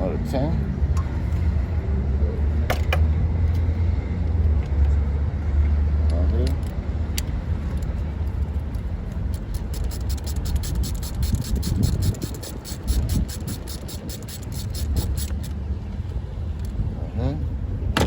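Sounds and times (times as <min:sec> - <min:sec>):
low steady rumble: 0:00.0 - 0:18.0
ratchet wrench clicking: 0:09.1 - 0:15.6.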